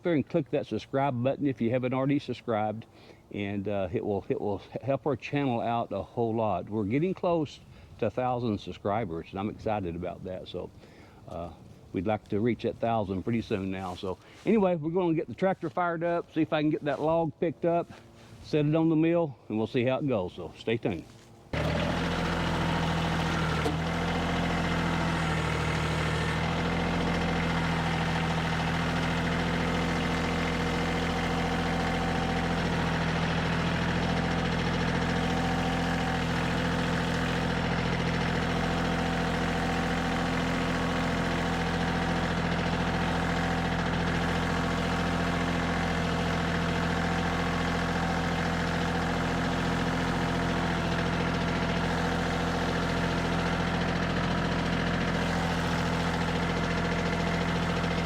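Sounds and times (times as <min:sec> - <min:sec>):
tractor diesel engine idling: 0:19.6 - 0:58.0.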